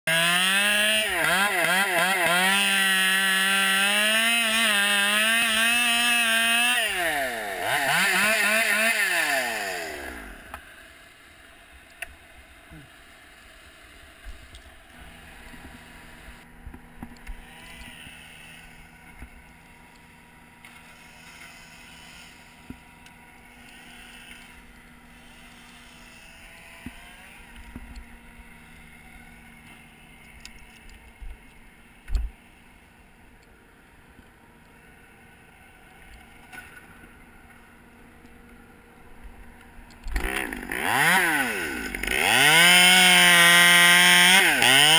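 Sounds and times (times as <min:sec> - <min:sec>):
chainsaw engine revving: 0:00.1 - 0:10.9, 0:14.8 - 0:16.5, 0:17.2 - 0:30.4, 0:39.9 - 0:44.9.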